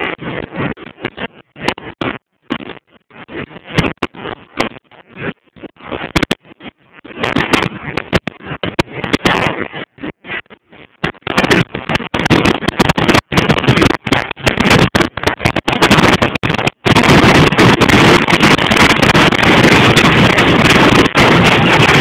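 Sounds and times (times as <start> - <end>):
wind buffeting microphone: 11.3 - 22.0.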